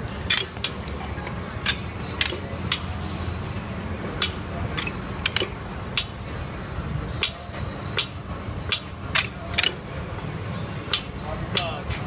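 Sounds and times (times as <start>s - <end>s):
metal tools clinking: 0.0s - 2.5s, 4.7s - 5.6s.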